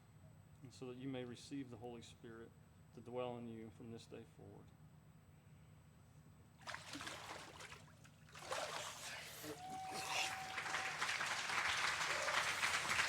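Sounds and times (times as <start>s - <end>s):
water splashing and sloshing: 6.6s - 9.5s
applause: 9.0s - 13.0s
crowd cheering: 9.4s - 13.0s.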